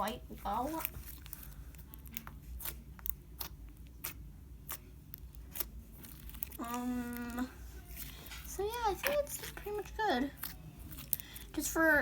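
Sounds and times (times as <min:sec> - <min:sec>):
person humming: 0:06.6 - 0:07.6.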